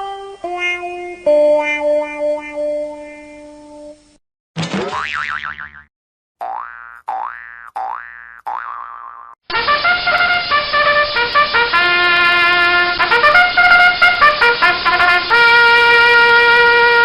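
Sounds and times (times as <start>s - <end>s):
short trumpet tune: 9.5s - 17.0s.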